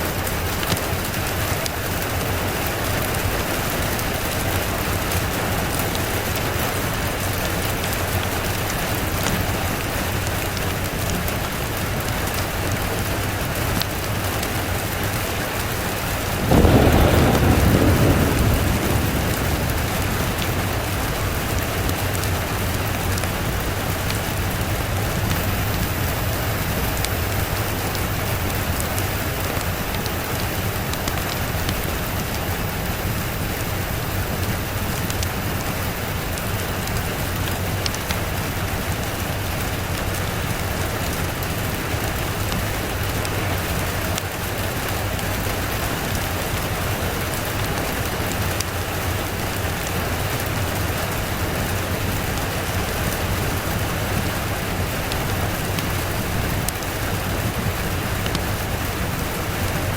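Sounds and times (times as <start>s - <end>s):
heavy rain: 0.0s - 59.9s
thunderclap rumbling: 12.3s - 32.4s.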